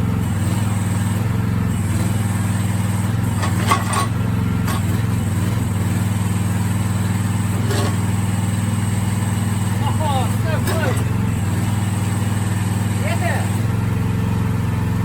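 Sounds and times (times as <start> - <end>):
small excavator engine running: 0.0 - 15.0
bucket breaking concrete: 3.3 - 5.7.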